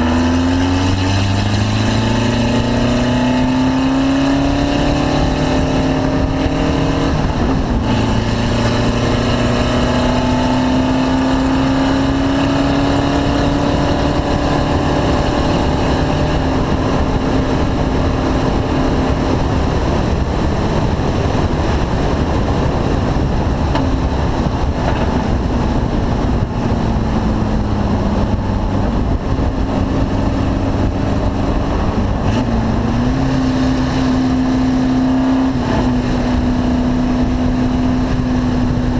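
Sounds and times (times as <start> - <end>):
car engine running at high pitch: 0.0 - 38.9.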